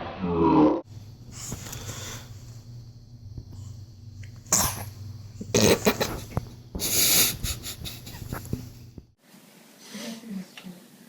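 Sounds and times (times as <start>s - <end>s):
low steady hum: 0.8s - 9.2s.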